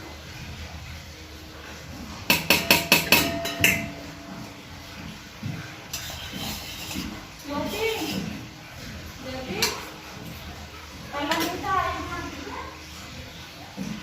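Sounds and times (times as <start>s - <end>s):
sharp ringing knocks: 2.3s - 4.7s.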